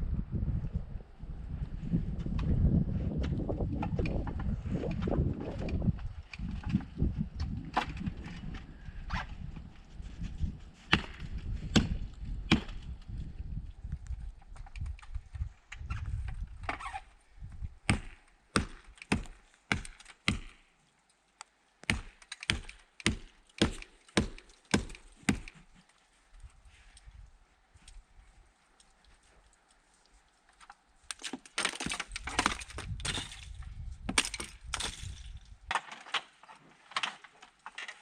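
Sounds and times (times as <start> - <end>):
low rumble: 0.0 - 14.1
tool chopping ice: 17.9 - 20.6, 21.8 - 25.6, 31.1 - 33.5.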